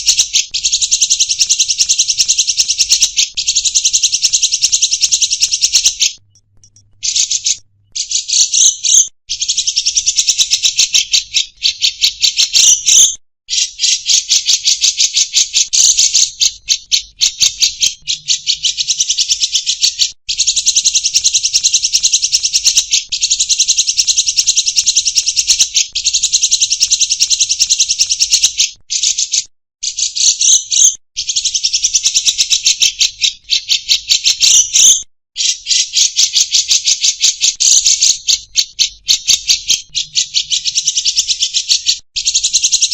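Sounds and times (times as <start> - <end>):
songbirds buzzing trill: 0.0 - 13.1, 34.4 - 35.0.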